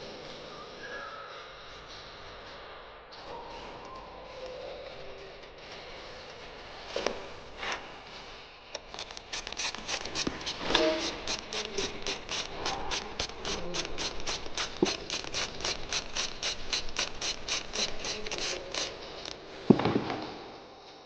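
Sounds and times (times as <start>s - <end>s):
ratchet clicking: 8.8s - 19.4s.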